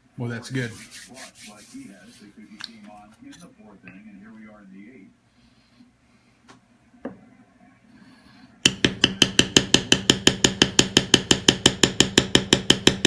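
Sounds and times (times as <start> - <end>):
mallet tapping leather stamp: 8.6 - 13.0.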